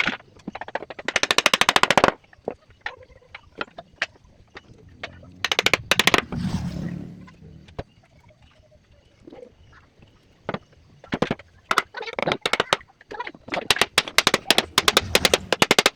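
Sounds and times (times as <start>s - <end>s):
hiss: 4.8s - 7.9s, 14.1s - 15.9s.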